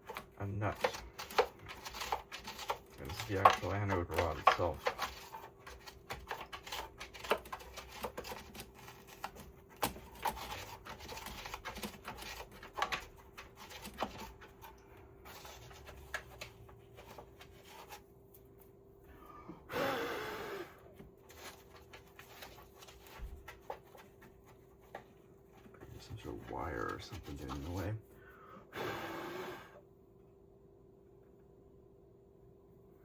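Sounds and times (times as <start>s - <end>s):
scratching and rustling of foam: 0.0s - 18.8s, 21.3s - 28.0s.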